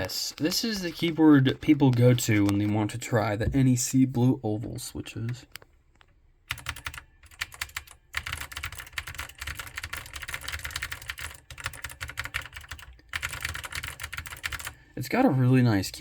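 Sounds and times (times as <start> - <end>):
clicky keyboard typing: 6.5 - 14.8.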